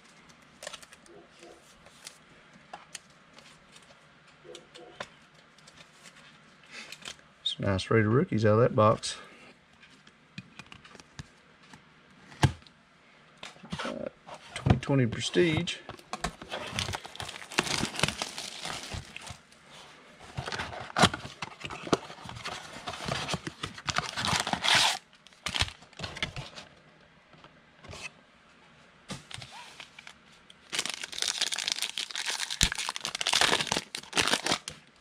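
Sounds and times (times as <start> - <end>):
card pack wrappers tearing: 16.6 - 19.4, 23.0 - 26.3, 29.3 - 34.8.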